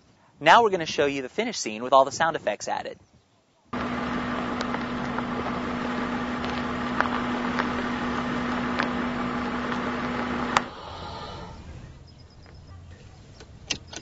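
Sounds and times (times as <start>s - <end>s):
stones popping: 3.8s - 10.7s
tires rumbling on gravel: 3.8s - 10.7s
car engine hum: 3.8s - 11.6s.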